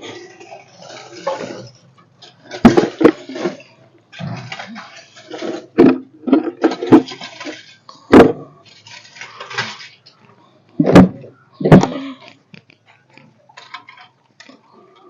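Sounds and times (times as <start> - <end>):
rough scraping: 0.0 - 10.2.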